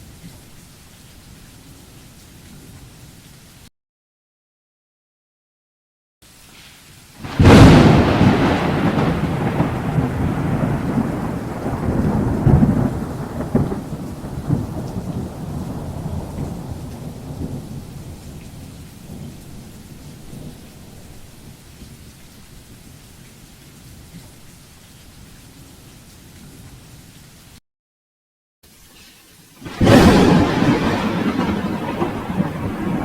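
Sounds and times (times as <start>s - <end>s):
rain hissing: 6.2s - 27.6s, 28.6s - 33.0s
thunder rumbling: 7.2s - 21.6s, 29.6s - 33.0s.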